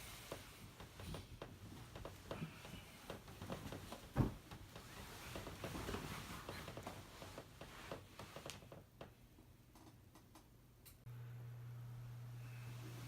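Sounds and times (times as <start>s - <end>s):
rustling and handling noise: 0.0s - 8.9s.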